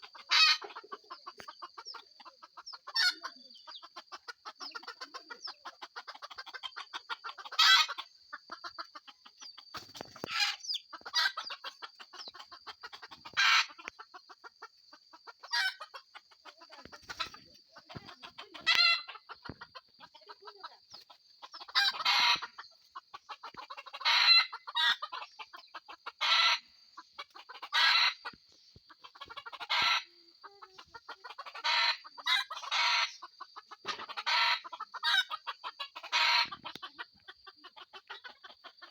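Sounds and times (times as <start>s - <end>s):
chickens clucking: 0.0s - 38.9s.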